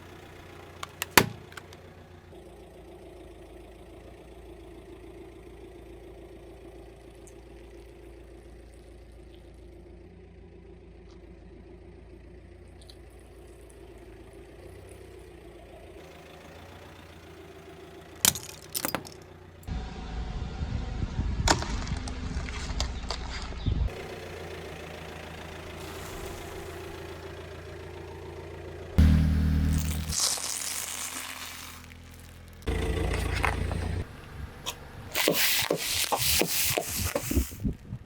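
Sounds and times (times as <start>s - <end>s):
car engine running: 0.0s - 38.0s
objects cracking under car: 18.2s - 19.3s, 29.6s - 34.0s.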